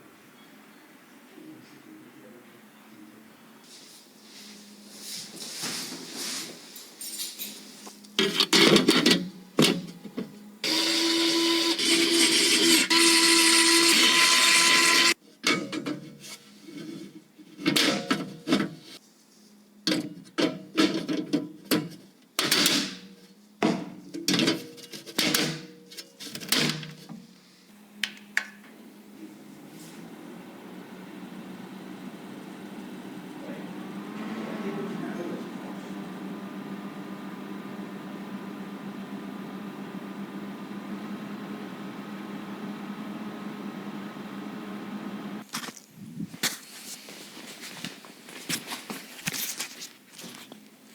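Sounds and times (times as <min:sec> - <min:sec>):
motorized whir: 0:10.6 - 0:15.2.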